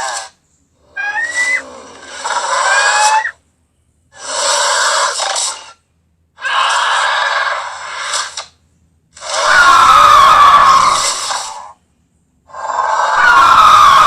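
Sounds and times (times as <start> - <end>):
creature screeching: 0.0 - 3.4, 4.2 - 5.8, 6.4 - 8.4, 9.2 - 11.7, 12.5 - 14.0.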